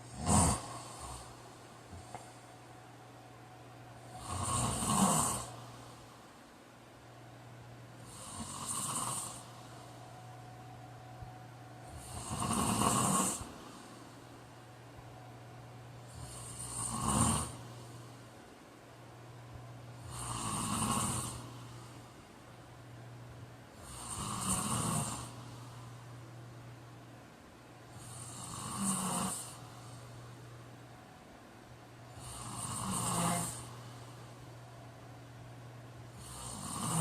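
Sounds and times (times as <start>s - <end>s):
man snoring: 0.0s - 2.2s, 4.0s - 5.8s, 8.0s - 9.6s, 11.8s - 14.0s, 16.0s - 18.0s, 20.0s - 21.8s, 23.8s - 25.7s, 27.9s - 29.7s, 32.2s - 33.8s, 36.1s - 37.0s
steady low hum: 0.0s - 37.0s.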